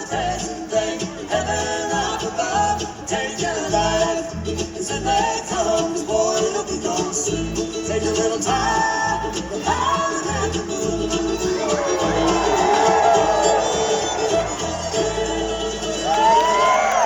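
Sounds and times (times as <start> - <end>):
sliding lead guitar line: 6.9 - 17.0
rock band playing: 10.2 - 17.0.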